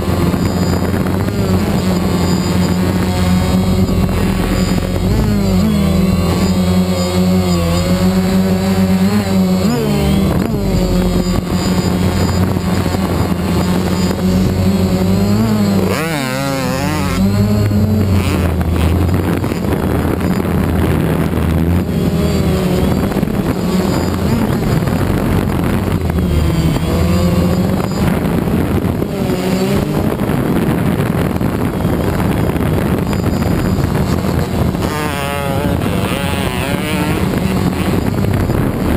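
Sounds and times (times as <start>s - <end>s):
dirt bike engine revving: 0.0s - 38.9s
steady low hum: 0.0s - 38.9s.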